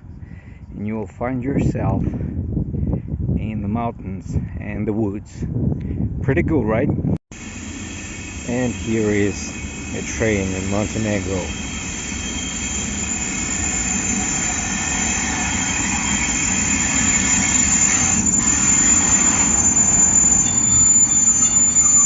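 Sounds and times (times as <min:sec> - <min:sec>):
freight train rail rumble: 0:07.3 - 0:22.0
high-pitched wheel squeal: 0:07.4 - 0:22.0.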